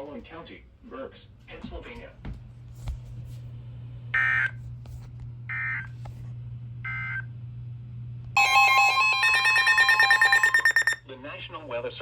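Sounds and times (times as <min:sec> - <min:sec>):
loud electronic alert tone: 0:08.4 - 0:11.0
warbling digital tones: 0:08.4 - 0:11.0.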